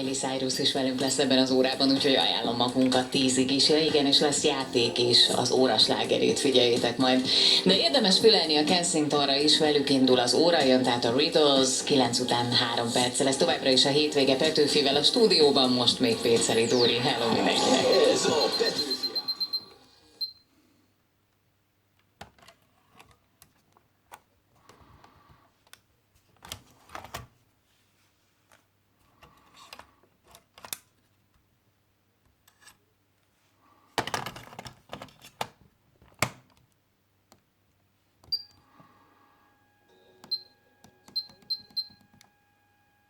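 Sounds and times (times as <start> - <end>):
short high beeps: 17.6 - 20.4.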